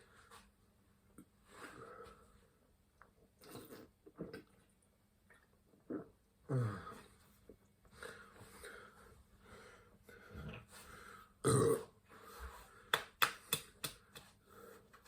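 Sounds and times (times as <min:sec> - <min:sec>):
man burping loudly: 0:11.4 - 0:12.0.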